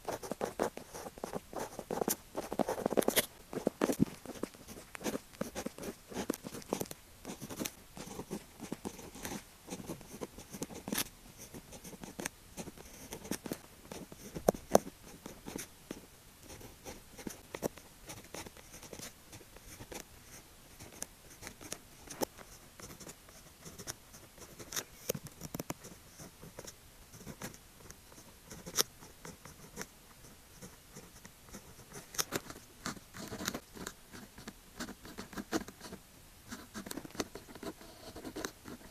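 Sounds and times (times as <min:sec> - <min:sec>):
pen scratching and tapping on paper: 0:00.0 - 0:38.9.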